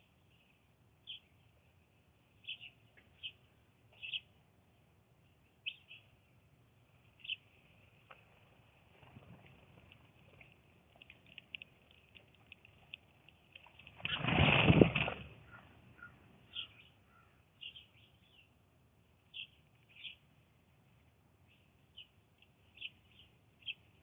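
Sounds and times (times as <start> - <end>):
blue jay calling: 2.4 - 4.3, 5.6 - 6.1, 15.4 - 18.4.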